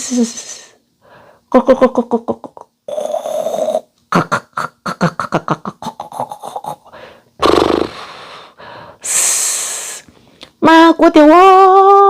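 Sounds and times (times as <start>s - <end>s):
person vocalizing syllables: 1.6s - 8.0s
breathy hiss: 6.1s - 10.4s.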